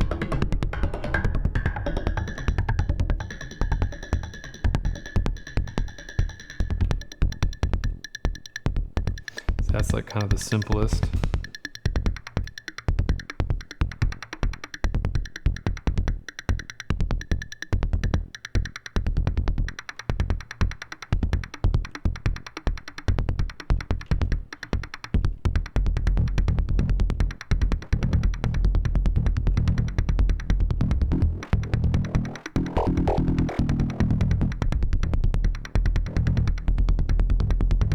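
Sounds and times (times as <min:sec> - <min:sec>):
fast electronic drum beat: 0:00.0 - 0:37.9
deep synth bass: 0:10.9 - 0:11.5, 0:27.8 - 0:37.9.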